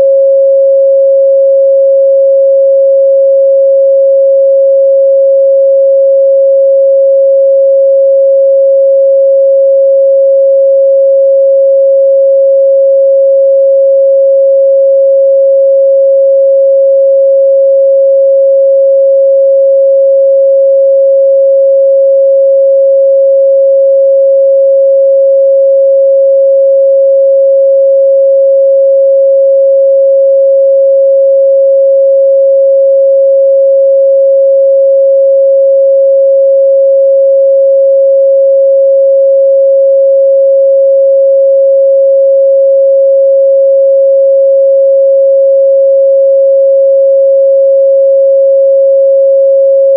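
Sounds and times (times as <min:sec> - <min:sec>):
sine wave test tone: 0:00.0 - 0:49.9.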